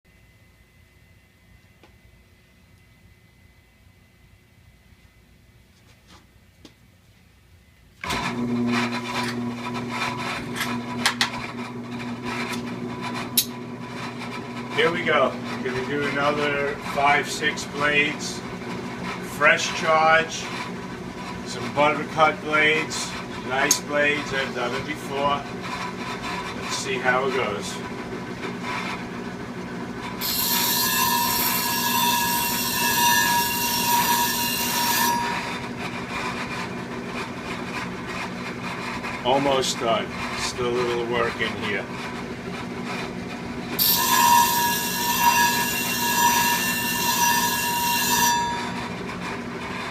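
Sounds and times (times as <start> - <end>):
sharpening machine humming: 8.0 - 49.9
sharpening machine motor hum: 29.9 - 39.2, 42.8 - 49.9
scratchy grinding: 30.1 - 41.5
blade grinding with squealing scrape: 30.2 - 36.7, 43.8 - 49.9.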